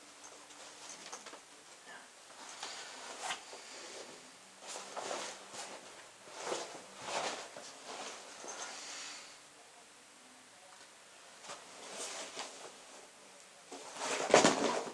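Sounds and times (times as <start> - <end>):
bag rustling and swishing: 4.7 - 8.7, 13.8 - 14.9.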